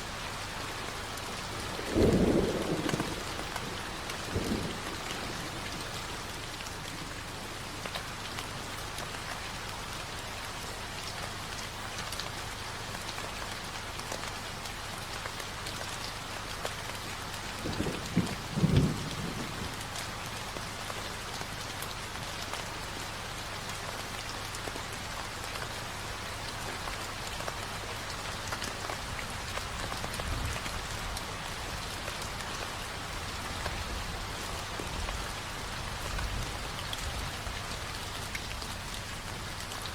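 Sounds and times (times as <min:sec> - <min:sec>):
steady rain patter: 0:00.0 - 0:39.9
low rumble of thunder: 0:01.2 - 0:07.2, 0:17.4 - 0:20.4.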